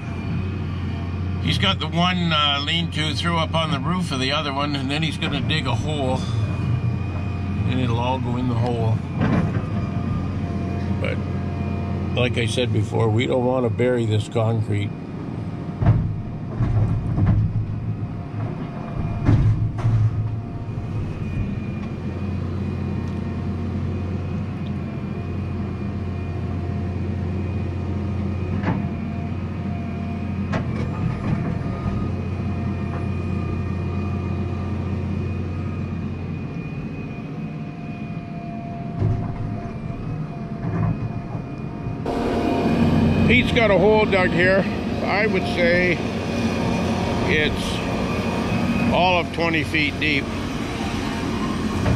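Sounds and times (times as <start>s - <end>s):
excavator diesel engine running: 0.0s - 51.9s
faint hydraulic whine: 0.0s - 51.9s.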